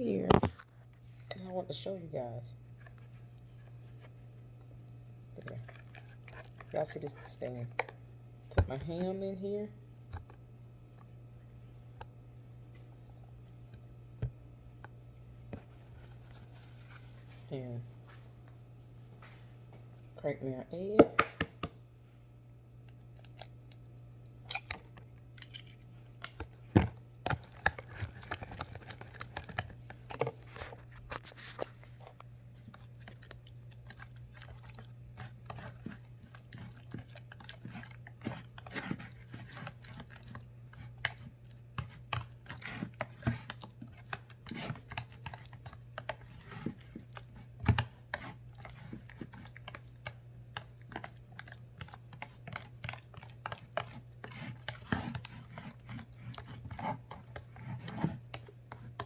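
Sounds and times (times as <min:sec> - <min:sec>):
steady low hum: 0:00.0 - 0:59.0.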